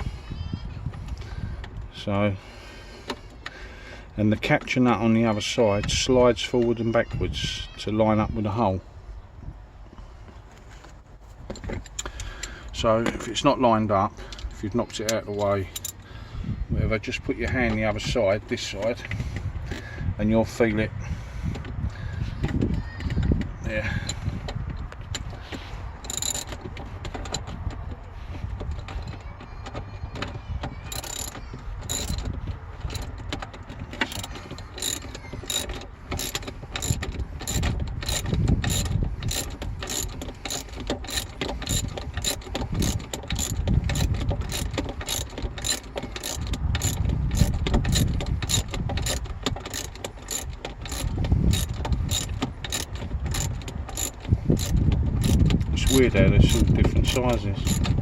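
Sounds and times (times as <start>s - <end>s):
ratchet spanner clicking: 15.0s - 16.1s, 26.0s - 27.7s, 30.8s - 58.0s.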